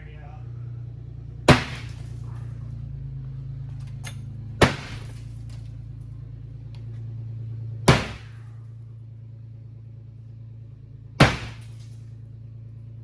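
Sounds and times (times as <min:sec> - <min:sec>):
steady low hum: 0:00.0 - 0:13.0
glass breaking: 0:01.5 - 0:02.2, 0:04.6 - 0:05.6, 0:07.9 - 0:08.4, 0:11.2 - 0:12.0
sledgehammer striking car body: 0:01.5 - 0:02.4, 0:04.6 - 0:05.6, 0:07.8 - 0:08.6, 0:11.2 - 0:12.0.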